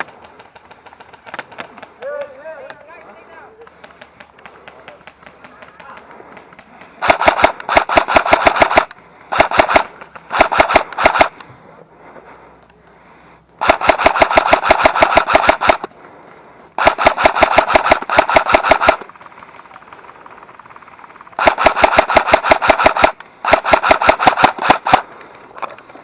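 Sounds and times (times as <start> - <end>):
airsoft rifle firing bursts: 3.7 - 11.4, 13.6 - 15.9, 16.8 - 25.1.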